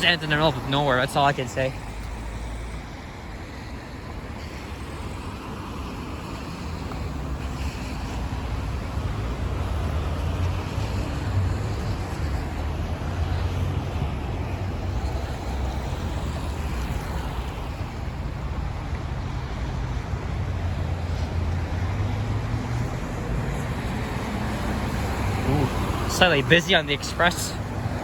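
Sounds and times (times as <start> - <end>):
traffic on wet pavement: 0.0 - 28.0
wind rumble on microphone: 1.9 - 26.1.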